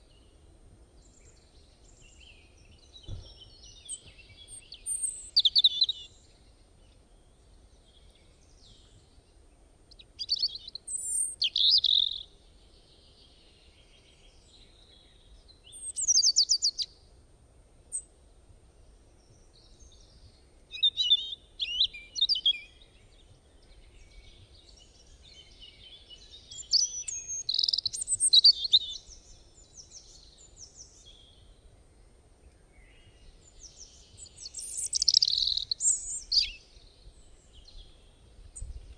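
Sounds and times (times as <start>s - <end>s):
bird chirping and trilling: 3.8s - 6.1s, 10.2s - 12.3s, 15.8s - 16.9s, 20.7s - 22.8s, 26.4s - 30.1s, 33.6s - 36.6s.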